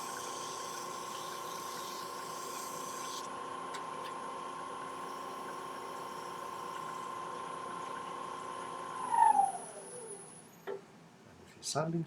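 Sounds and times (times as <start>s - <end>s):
wood lathe motor whining: 0.0s - 3.3s.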